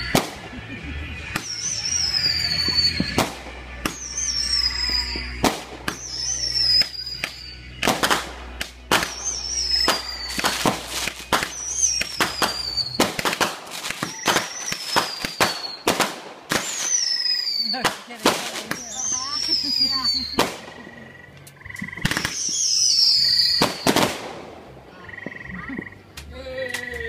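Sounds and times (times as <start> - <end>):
fireworks bangs and crackles: 0.0 - 21.0, 22.0 - 24.8
high falling whistle: 1.5 - 3.2, 6.0 - 7.6.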